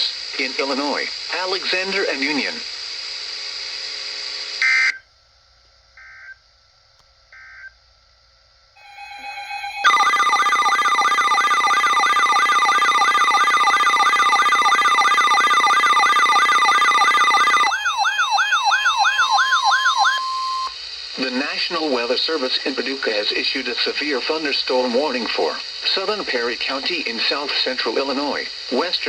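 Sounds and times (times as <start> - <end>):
warbling electronic alert tone: 8.8 - 20.7
digital data tone bursts: 8.8 - 20.8.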